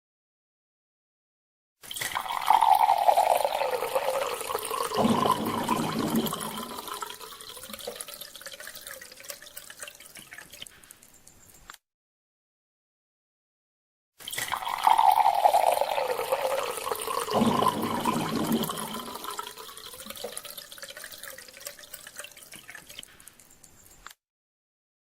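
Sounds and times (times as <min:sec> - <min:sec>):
water pouring into a glass: 0:01.8 - 0:11.3, 0:14.2 - 0:23.7.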